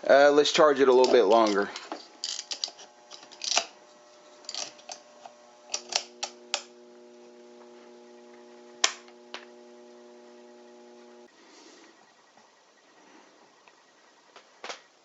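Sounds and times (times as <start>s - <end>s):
battery charger buzzing: 0.0s - 12.0s.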